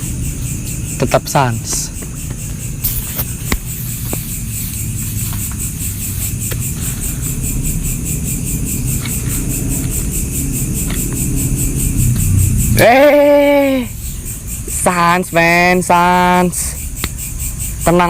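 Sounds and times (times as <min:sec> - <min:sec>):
crickets chirping: 0:00.0 - 0:18.0
low rumble: 0:03.4 - 0:14.7.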